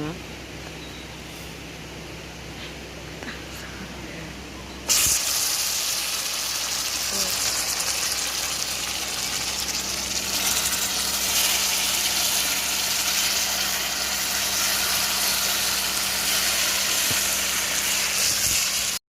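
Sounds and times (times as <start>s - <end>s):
low steady hum: 0.0s - 19.0s
food sizzling in hot oil: 4.9s - 19.0s.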